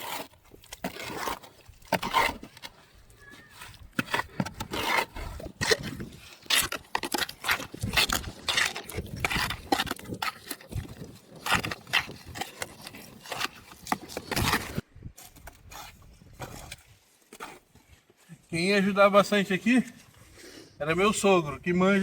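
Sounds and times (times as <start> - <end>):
hand tools scraping concrete mix: 0.0 - 18.5.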